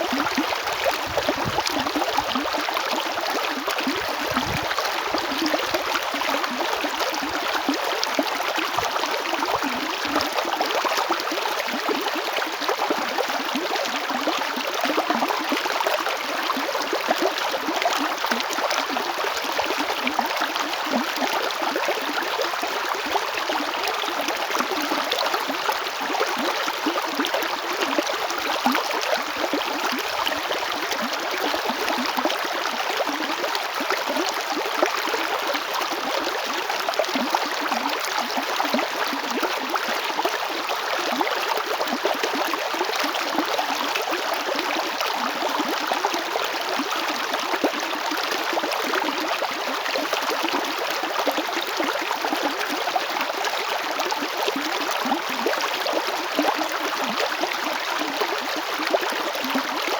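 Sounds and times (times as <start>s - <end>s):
river flowing over stones: 0.0s - 14.9s.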